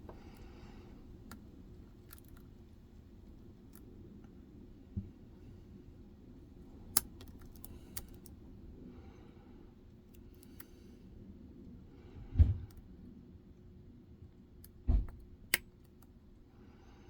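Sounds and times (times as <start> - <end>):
lock pick clicking and scraping: 1.2 - 2.5, 6.9 - 8.4.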